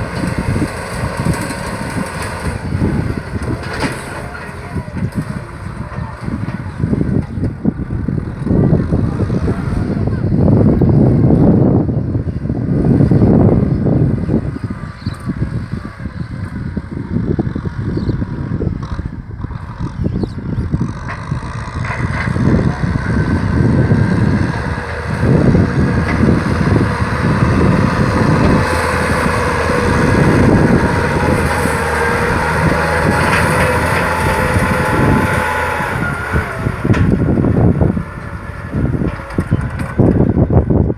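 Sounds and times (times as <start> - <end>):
tractor diesel engine rumbling: 0.0 - 40.9
steady whine: 12.6 - 40.8.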